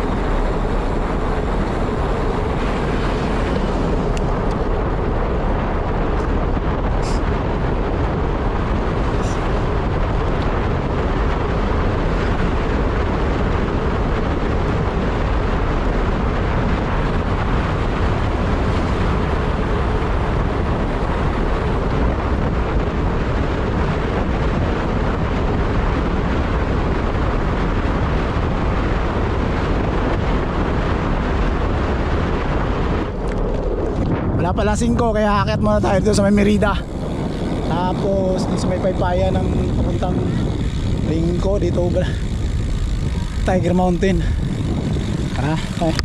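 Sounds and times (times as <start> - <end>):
low rumble: 0.0 - 46.0
wind rushing over microphone: 0.0 - 46.0.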